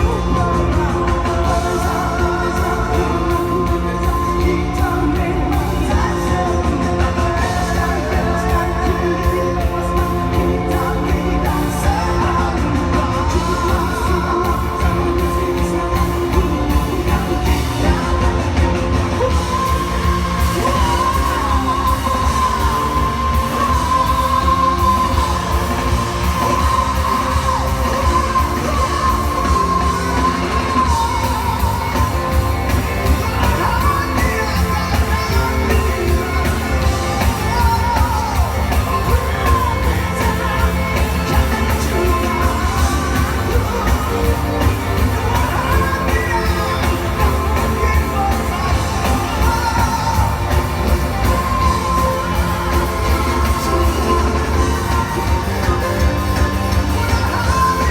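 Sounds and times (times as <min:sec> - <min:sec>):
pop-rock band playing: 0:00.0 - 0:57.9
singer belting high note: 0:00.0 - 0:57.9.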